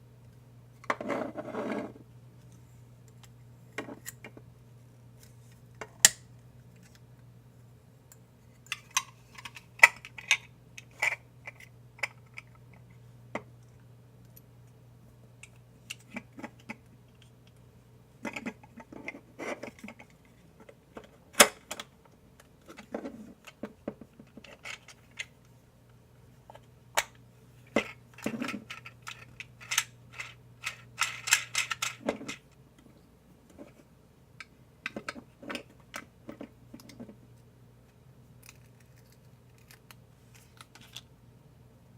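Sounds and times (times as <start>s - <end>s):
faint steady hum: 0.0s - 41.9s
plastic parts clicking: 27.8s - 32.4s.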